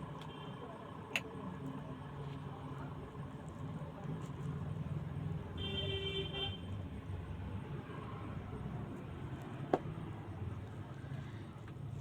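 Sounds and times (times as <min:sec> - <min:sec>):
low traffic rumble: 0:00.0 - 0:12.0
vehicle horn toot: 0:05.6 - 0:06.7.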